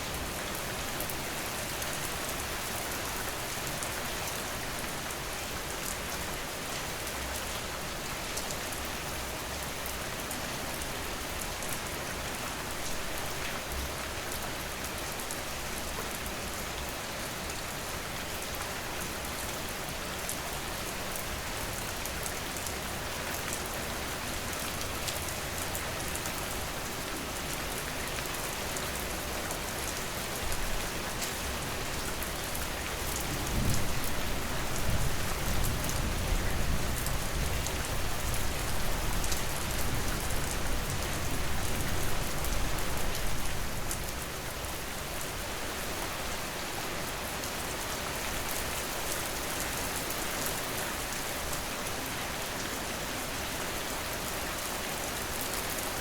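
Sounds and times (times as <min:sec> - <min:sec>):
steady rain hiss: 0:00.0 - 0:56.0.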